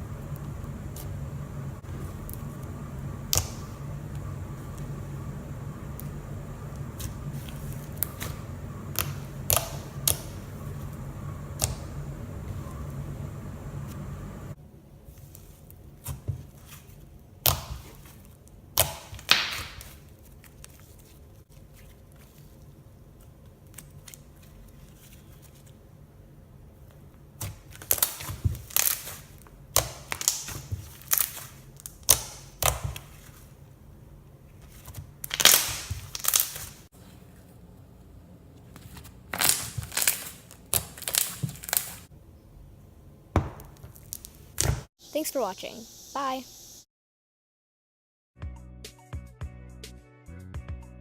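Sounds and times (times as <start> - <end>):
slime popping and crackling: 18.8 - 20.7, 27.4 - 33.1, 35.2 - 36.9, 39.3 - 42.1.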